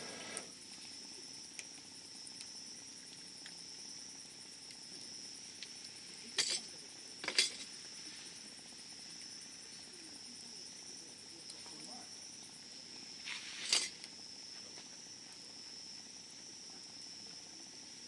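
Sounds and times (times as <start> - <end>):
insects chirping: 0.0 - 18.0
campfire crackling and popping: 0.3 - 9.9.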